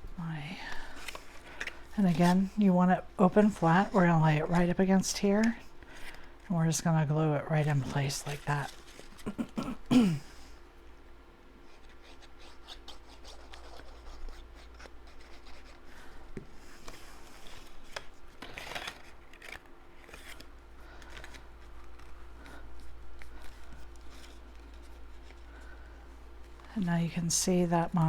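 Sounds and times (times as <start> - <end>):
paper rustling and rubbing: 0.9 - 2.6, 7.6 - 9.4, 11.6 - 26.9.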